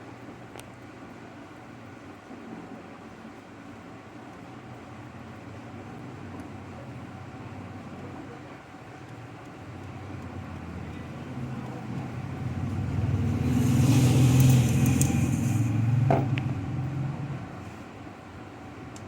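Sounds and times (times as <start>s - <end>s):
vehicle passing by: 9.4s - 17.9s.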